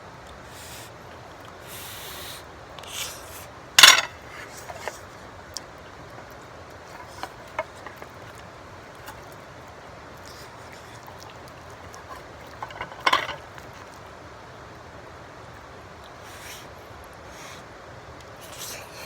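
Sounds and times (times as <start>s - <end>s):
outdoor background hiss: 0.0s - 19.0s
metal utensil scraping cookware: 3.8s - 4.2s, 12.6s - 13.4s
utensil clatter: 3.8s - 5.0s, 6.9s - 8.2s, 11.8s - 13.9s.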